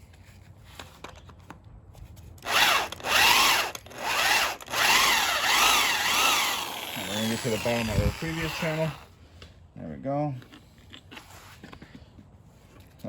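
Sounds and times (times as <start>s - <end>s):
power drill whining into bolt: 2.4s - 9.1s.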